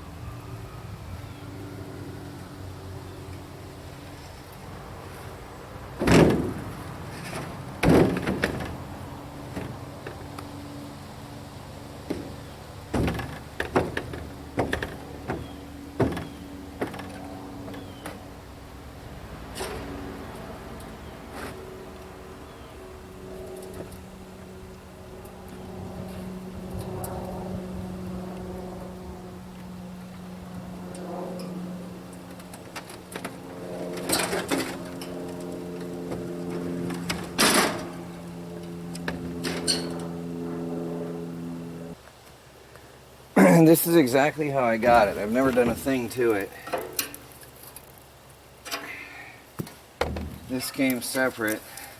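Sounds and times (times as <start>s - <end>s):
steady low hum: 0.0s - 51.9s
wood chipper knocking and clunking: 6.0s - 10.2s, 12.0s - 18.1s, 49.6s - 50.6s.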